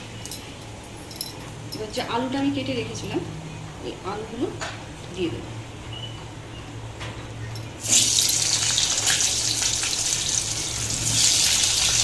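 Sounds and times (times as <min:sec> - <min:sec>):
potatoes sizzling in hot oil: 0:07.8 - 0:12.0.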